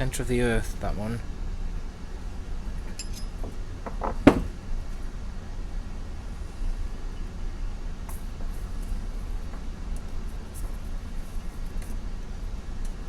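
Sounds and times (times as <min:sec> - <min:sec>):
steady low hum: 0:00.0 - 0:13.0
sharp metallic knocks and clicks: 0:03.0 - 0:04.6.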